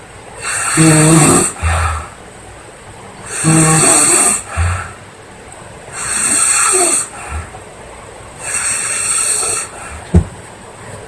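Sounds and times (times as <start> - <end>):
woman snoring heavily: 0.4 - 2.2, 3.3 - 5.0, 6.0 - 7.5, 8.4 - 9.8.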